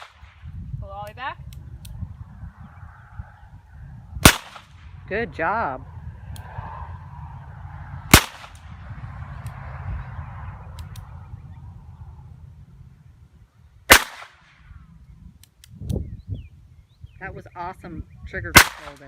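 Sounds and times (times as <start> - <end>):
revolver shots: 4.2 - 4.9.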